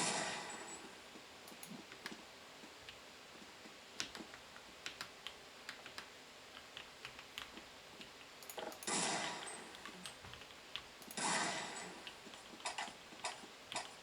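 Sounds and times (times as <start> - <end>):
mechanical keyboard typing: 4.0 - 8.9.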